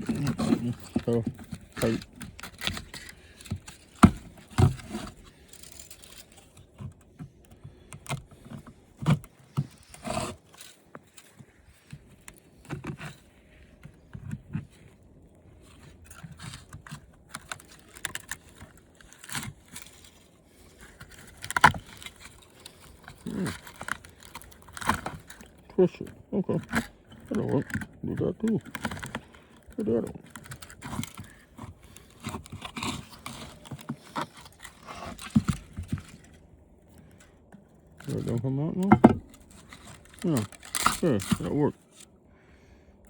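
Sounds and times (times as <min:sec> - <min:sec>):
hand tools clicking and knocking: 0:38.1 - 0:41.6.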